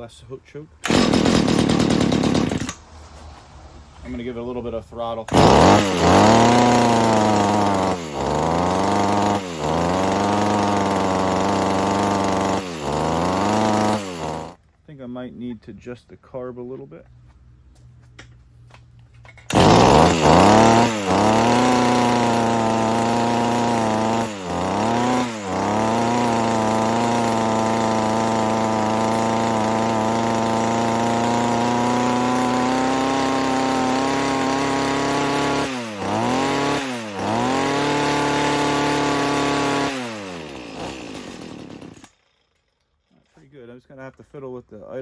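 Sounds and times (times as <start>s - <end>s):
small two-stroke engine running: 0.8s - 2.8s, 5.3s - 14.6s, 19.5s - 42.2s.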